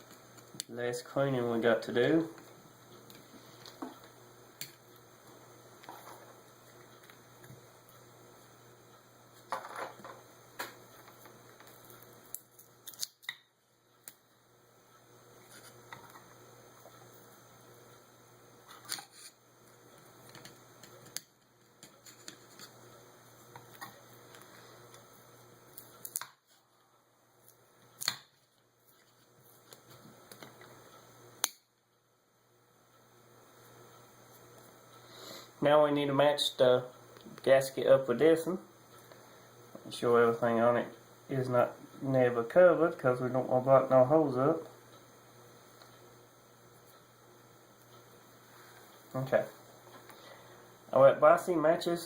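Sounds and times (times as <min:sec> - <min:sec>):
faint steady hum: 0:00.0 - 0:52.0.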